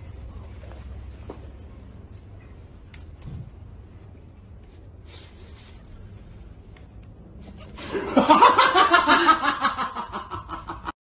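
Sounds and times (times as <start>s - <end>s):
person laughing loudly: 7.7s - 10.9s.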